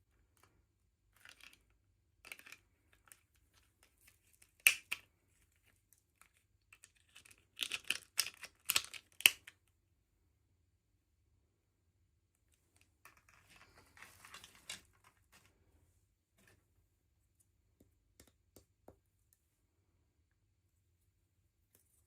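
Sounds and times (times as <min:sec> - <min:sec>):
soft packaging rustling: 0:12.5 - 0:16.9.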